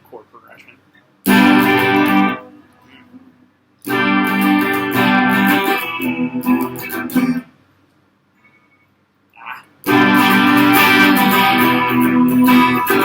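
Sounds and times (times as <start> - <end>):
guitar strumming chords: 1.3 - 7.5, 9.8 - 13.0.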